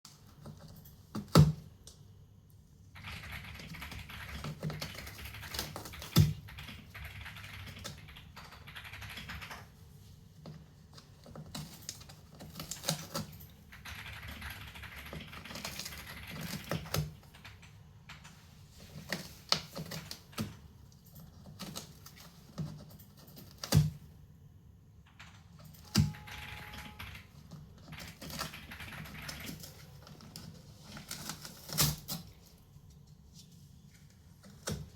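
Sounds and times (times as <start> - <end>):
cat scratching cardboard: 29.7 - 32.5.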